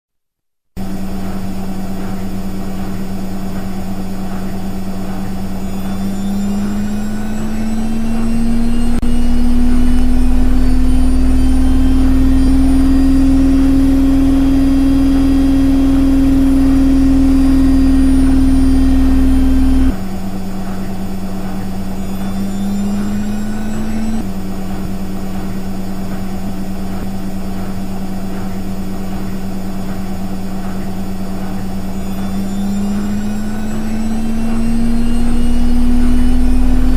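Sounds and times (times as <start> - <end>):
washing machine motor hum: 0.8 - 36.9
heavy low rumble: 7.2 - 20.0.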